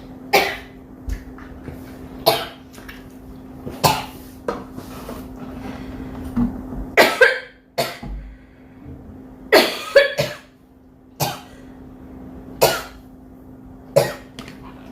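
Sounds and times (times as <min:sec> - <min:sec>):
girl coughing: 0:00.3 - 0:00.8, 0:07.0 - 0:08.1, 0:09.5 - 0:10.6, 0:11.2 - 0:11.6, 0:12.6 - 0:13.0, 0:14.0 - 0:14.3.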